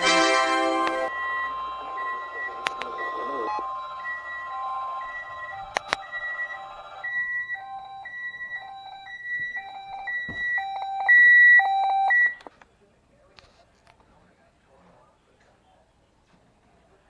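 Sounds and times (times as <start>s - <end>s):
weather radio alarm beeping: 0.9s - 12.5s.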